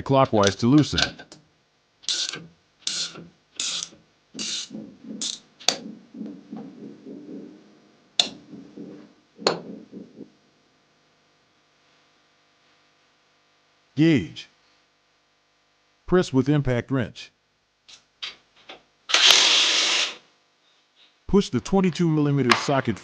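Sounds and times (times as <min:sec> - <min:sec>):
ratcheting socket wrench strokes: 0:02.0 - 0:05.4.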